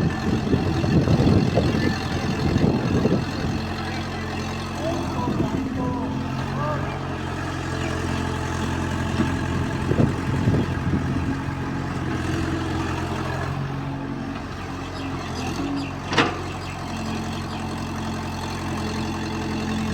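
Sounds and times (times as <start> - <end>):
diesel engine running: 0.0 - 19.9.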